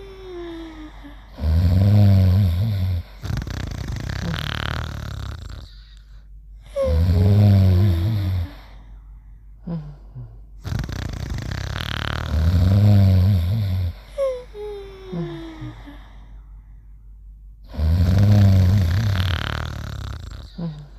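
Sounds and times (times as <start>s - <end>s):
soft breathing: 0.0s - 10.6s, 12.0s - 17.1s, 18.7s - 20.9s
cartoon snoring with whistle: 1.4s - 5.9s, 6.9s - 8.5s, 10.6s - 13.9s, 17.7s - 20.7s.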